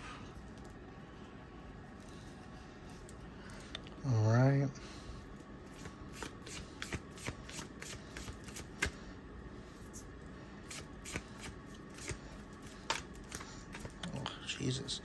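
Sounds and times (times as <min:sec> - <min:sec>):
cards being shuffled: 0:05.7 - 0:09.1, 0:10.7 - 0:14.2.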